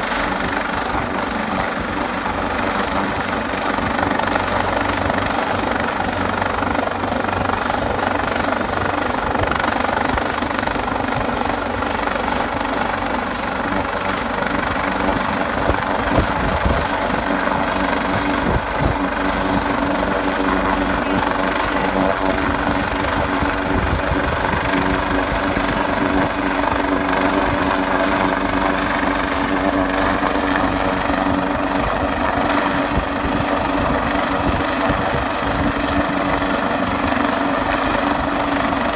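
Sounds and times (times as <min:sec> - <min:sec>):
helicopter rotor and turbine drone: 0:00.0 - 0:38.9.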